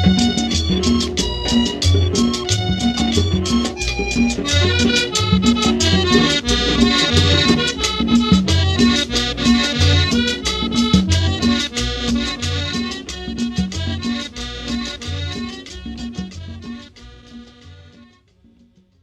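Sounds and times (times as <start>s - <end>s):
bouncing bass line: 0.0s - 18.2s
latin dance music: 0.0s - 18.4s
busy percussion: 0.0s - 19.0s.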